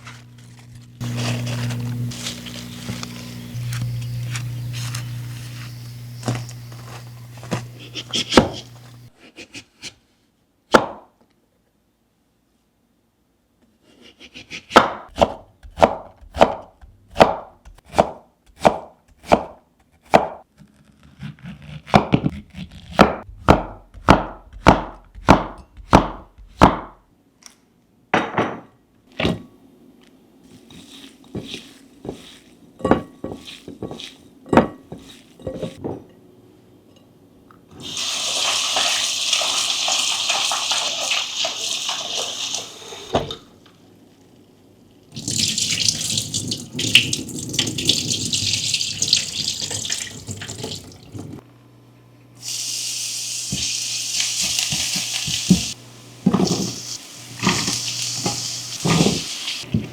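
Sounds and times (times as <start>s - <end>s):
knife chopping on cutting board: 7.5s - 8.8s, 14.3s - 20.4s, 21.2s - 27.0s.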